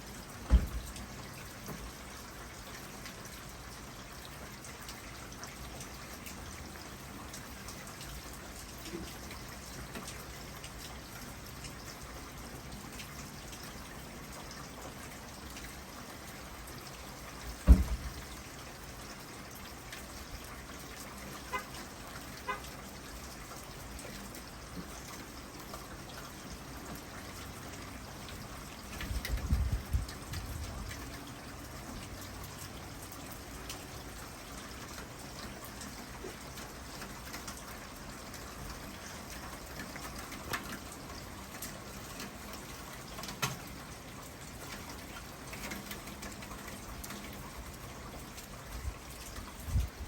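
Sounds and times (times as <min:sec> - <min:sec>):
steady rain falling: 0:00.0 - 0:50.0
water trickling and dripping: 0:00.0 - 0:50.0
loud low thump: 0:00.5 - 0:00.9, 0:17.7 - 0:18.1.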